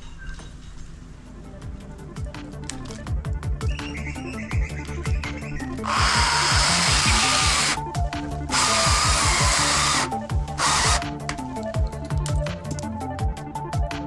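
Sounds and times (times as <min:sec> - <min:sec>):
background music with steady beat: 0:00.5 - 0:14.0
chainsaw running at high revs: 0:05.8 - 0:07.8, 0:08.5 - 0:11.1.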